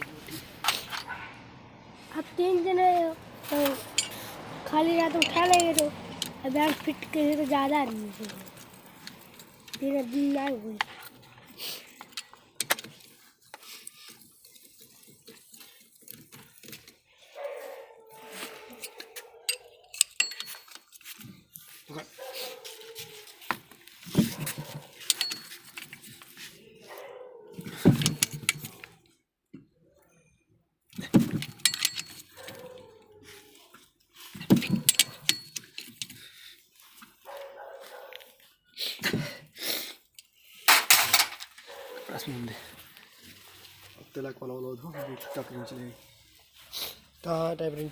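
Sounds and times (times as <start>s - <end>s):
sharp clinking and rattling: 2.4s - 26.7s, 27.5s - 29.0s, 30.9s - 38.4s, 40.1s - 44.2s.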